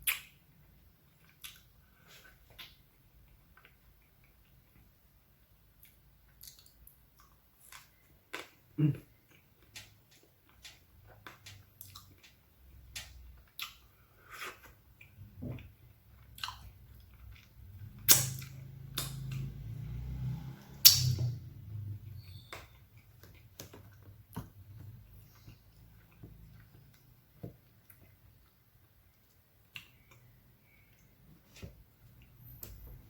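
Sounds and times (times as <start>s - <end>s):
mouth clicks and chewing: 0.0s - 0.4s, 1.1s - 4.9s, 5.7s - 8.6s, 9.2s - 19.5s, 25.0s - 31.1s.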